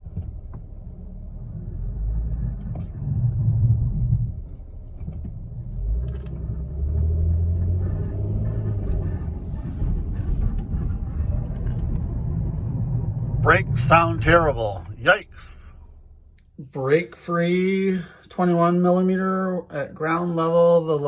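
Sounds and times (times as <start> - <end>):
rumbling brake noise: 0.0 - 16.6.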